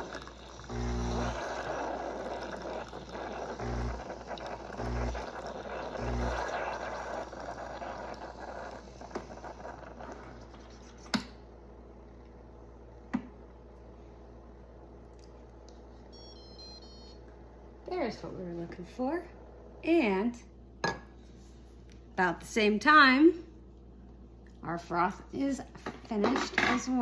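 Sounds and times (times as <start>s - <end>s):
coffee machine pump hissing: 0.0s - 11.2s
short beeps: 16.1s - 17.2s.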